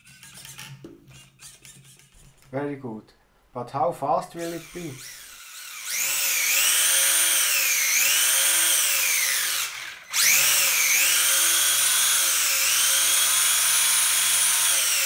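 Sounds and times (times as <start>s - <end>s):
electric motor whining: 4.4s - 15.0s.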